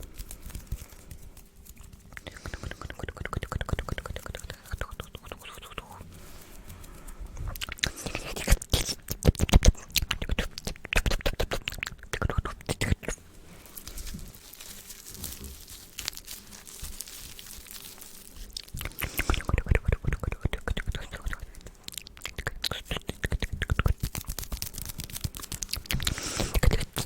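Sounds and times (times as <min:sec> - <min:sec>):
wet mouth clicking and smacking: 0:02.1 - 0:06.0, 0:07.4 - 0:13.2, 0:18.6 - 0:27.0.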